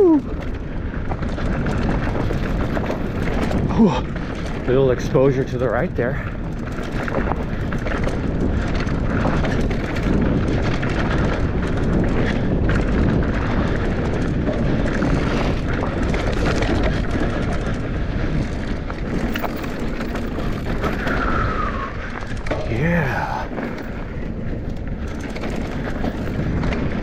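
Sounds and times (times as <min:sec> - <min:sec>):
bike rattling and knocking: 0:00.0 - 0:27.0
bike tyres rumbling on dirt: 0:00.0 - 0:27.0
wind buffeting microphone: 0:00.0 - 0:27.0.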